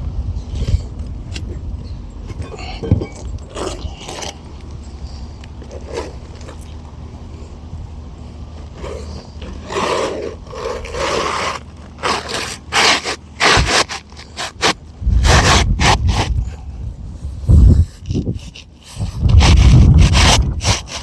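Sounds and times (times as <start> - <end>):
roof shingle scraping and rustling: 8.6 - 16.6
sharp scrapes and knocks: 8.6 - 16.6, 17.8 - 21.0
dull low rumble: 14.8 - 20.6.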